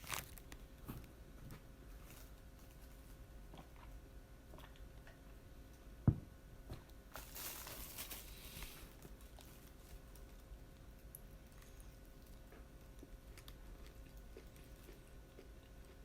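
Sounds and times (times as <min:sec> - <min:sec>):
person chewing: 0:11.0 - 0:16.0.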